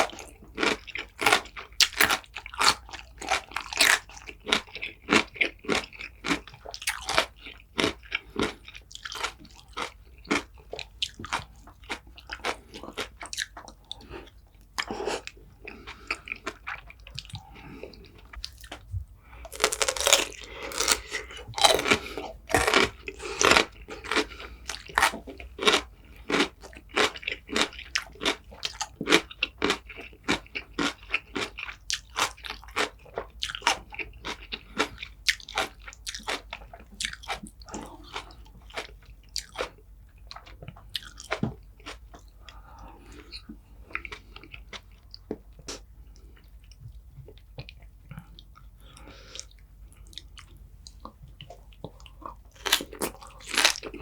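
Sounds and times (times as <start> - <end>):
person chewing crunchy food: 0.0 - 54.0.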